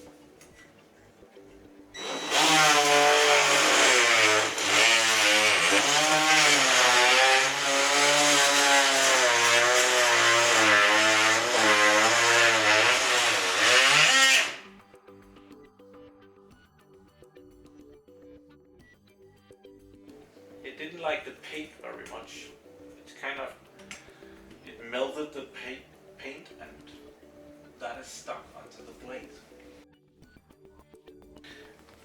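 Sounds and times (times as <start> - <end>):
oscillating multi-tool cutting wood: 2.0 - 14.7.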